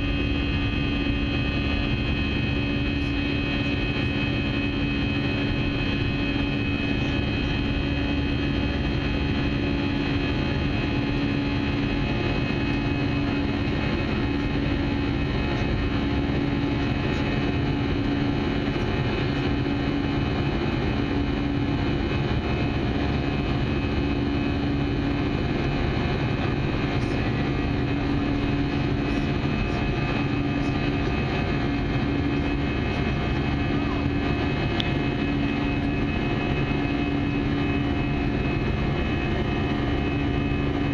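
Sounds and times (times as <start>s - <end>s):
jet engine drone in cabin: 0.0s - 40.9s
low hum: 0.0s - 40.9s.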